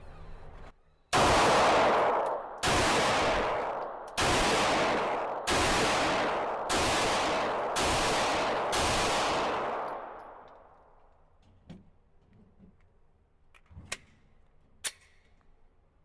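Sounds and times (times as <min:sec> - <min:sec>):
faint sharp cracks: 0:01.2 - 0:06.6
pistol shot ringing out: 0:01.2 - 0:10.5.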